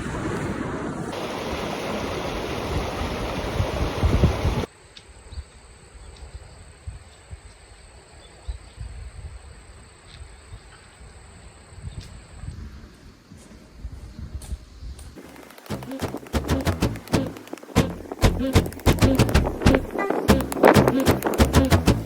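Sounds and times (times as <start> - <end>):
stream water rushing: 1.1 - 4.7.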